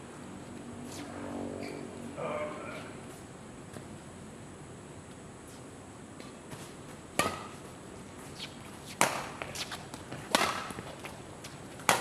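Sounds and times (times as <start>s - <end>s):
rackets striking shuttlecock: 7.1s - 7.7s, 8.4s - 12.0s.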